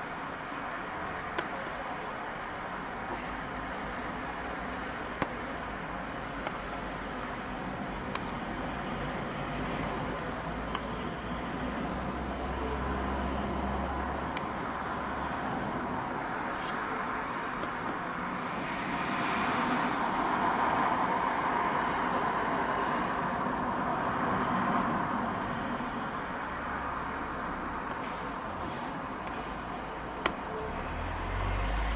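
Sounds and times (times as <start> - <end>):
rushing noise of passing traffic: 0.0 - 31.9.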